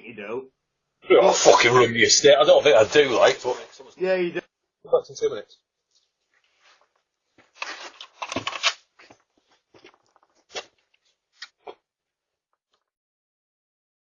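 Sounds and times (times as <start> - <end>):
rustling and scuffing: 6.0 - 11.4.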